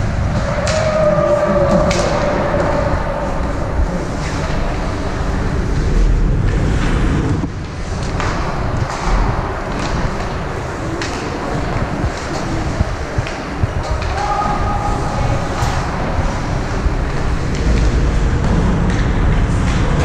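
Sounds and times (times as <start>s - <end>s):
crowd and rink noise: 0.0s - 20.0s
hockey sticks and puck clacking: 0.1s - 20.0s.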